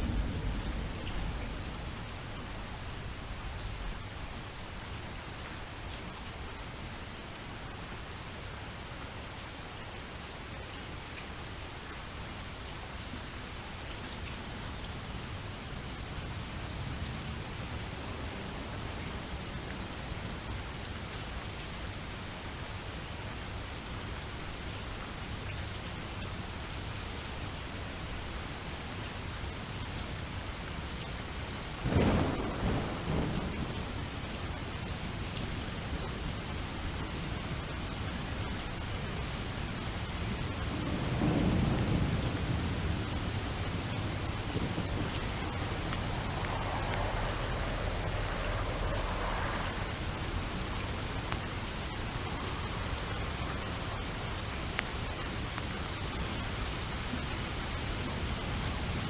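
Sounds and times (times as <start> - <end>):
thunder rumbling: 0.0 - 4.0, 31.8 - 34.2, 40.4 - 55.1
steady rainfall: 0.0 - 59.0.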